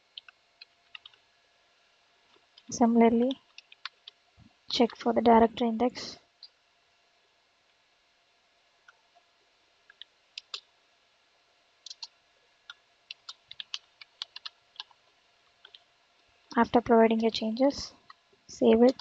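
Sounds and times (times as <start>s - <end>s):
keyboard typing: 0.1s - 1.2s, 3.5s - 4.2s, 9.9s - 10.7s, 11.8s - 12.1s, 12.7s - 15.0s, 15.6s - 15.8s, 17.1s - 17.8s, 18.6s - 19.0s.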